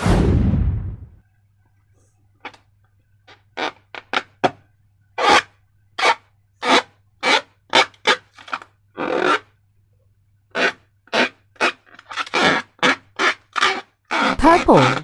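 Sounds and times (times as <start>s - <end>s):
faint steady hum: 4.6s - 7.7s
slime squishing: 11.1s - 15.0s.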